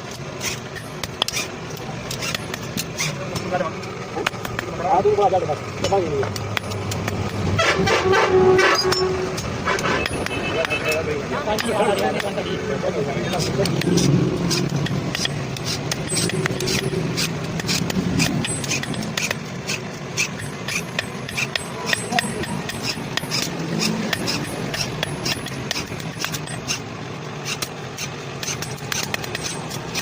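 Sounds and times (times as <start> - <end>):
workshop noise: 0.0 - 30.0
metallic taps and clinks: 0.7 - 3.5, 5.8 - 7.5, 8.9 - 12.5, 13.3 - 26.8, 28.4 - 30.0.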